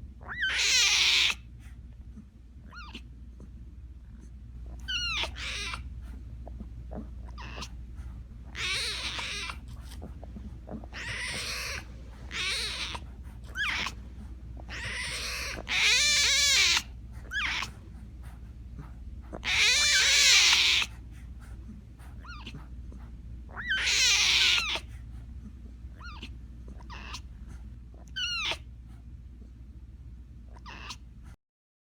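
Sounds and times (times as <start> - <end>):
steady low hum: 0.0 - 0.5, 1.3 - 31.4
tiger cub mewing cries: 0.2 - 1.4, 4.7 - 5.9, 7.3 - 7.7, 8.5 - 10.0, 10.7 - 17.8, 19.4 - 21.0, 23.5 - 24.9, 26.0 - 27.2, 28.0 - 28.6, 30.6 - 31.0.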